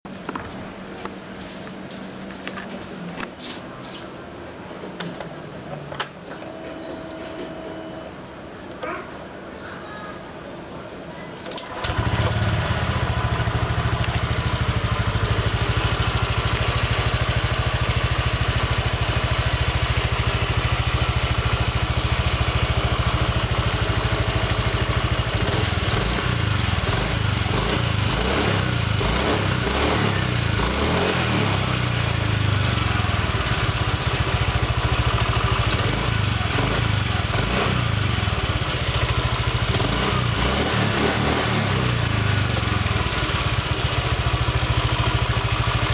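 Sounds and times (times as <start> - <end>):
scooter engine idling: 11.6 - 45.9.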